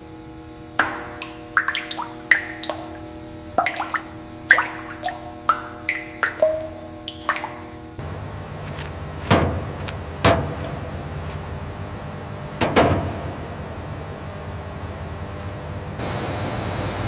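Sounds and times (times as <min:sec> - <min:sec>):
plucked water-drop notes: 0:00.8 - 0:08.0.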